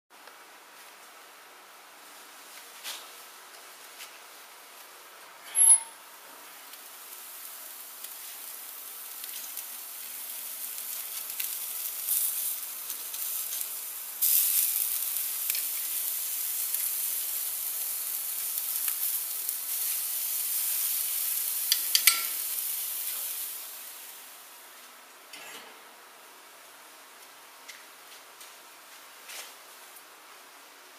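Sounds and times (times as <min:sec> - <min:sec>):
food sizzling on a grill: 0:06.4 - 0:25.0.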